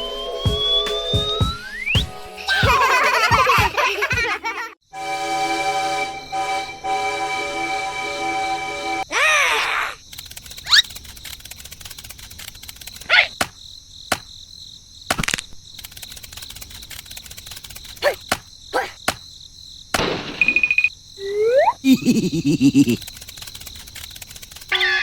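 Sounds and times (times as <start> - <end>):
rising whistle-like swoops: 0.0 - 2.6
crickets chirping: 9.0 - 25.0
sharp clicks: 10.1 - 14.3, 15.1 - 19.3, 22.9 - 24.9.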